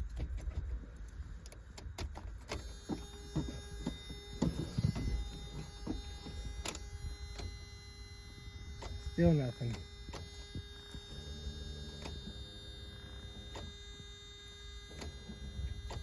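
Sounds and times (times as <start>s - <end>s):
electrical hum: 0.0s - 16.0s.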